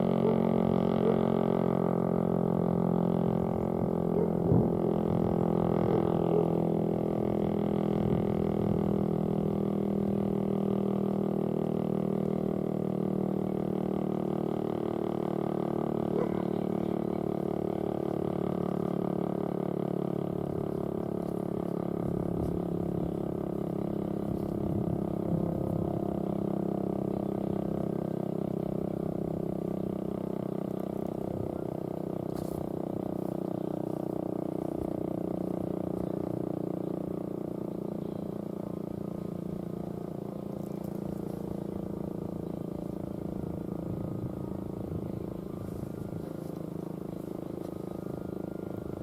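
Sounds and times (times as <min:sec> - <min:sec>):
warning siren steady tone: 0:20.7 - 0:29.4, 0:37.3 - 0:49.0.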